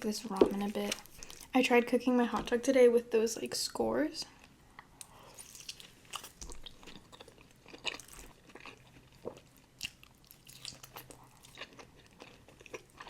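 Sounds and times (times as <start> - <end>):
chewing and biting: 4.4 - 13.0.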